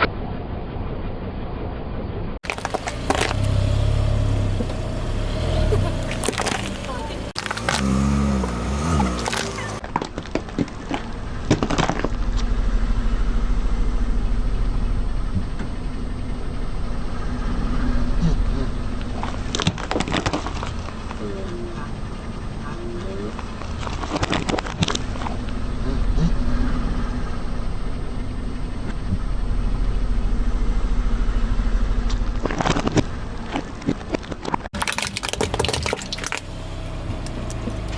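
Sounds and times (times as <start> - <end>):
car engine running: 0.0 - 37.9
crunching under a tyre: 2.4 - 37.9
tyre crushing something brittle: 7.4 - 8.0, 32.4 - 36.5.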